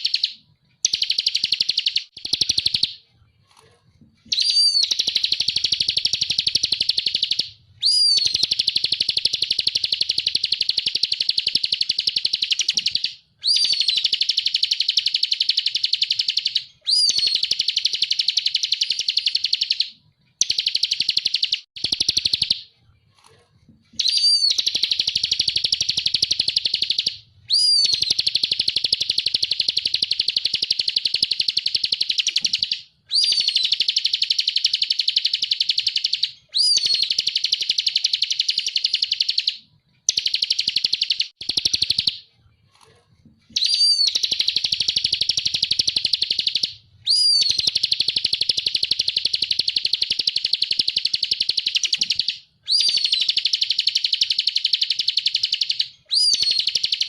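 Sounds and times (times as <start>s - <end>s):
bird singing fast trills: 0.0s - 3.0s, 4.3s - 22.6s, 24.0s - 42.2s, 43.6s - 57.0s.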